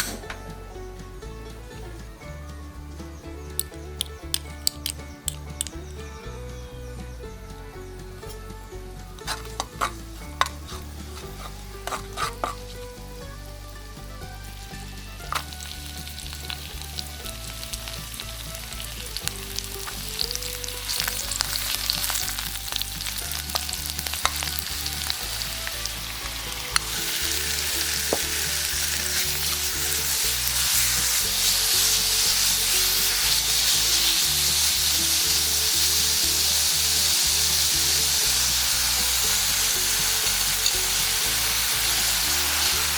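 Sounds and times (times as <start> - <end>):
utensil scraping a pan: 9.2 - 12.9, 15.2 - 42.9
food sizzling in a pan: 14.4 - 42.9.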